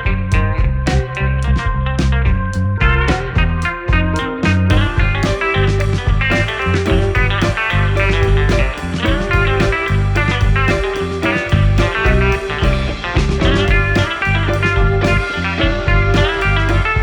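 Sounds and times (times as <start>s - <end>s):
electric guitar with bass and drums: 0.0s - 17.0s.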